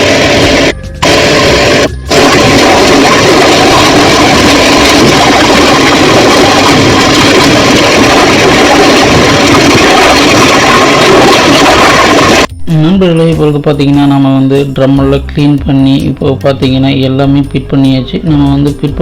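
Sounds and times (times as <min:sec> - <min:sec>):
pressure washer spraying metal drum: 0:00.0 - 0:12.5.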